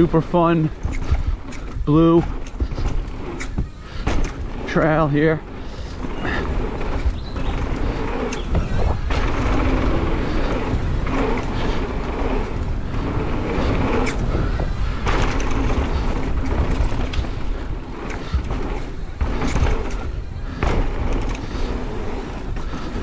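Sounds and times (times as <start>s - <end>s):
bike knocks and rattles: 0.0s - 23.0s
bike tyre noise: 0.0s - 23.0s
wind on microphone: 0.0s - 23.0s.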